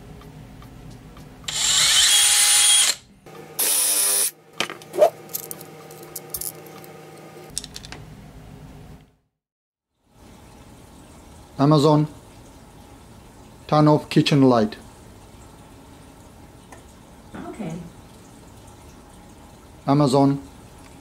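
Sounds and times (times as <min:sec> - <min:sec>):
power drill running: 0:01.5 - 0:04.4.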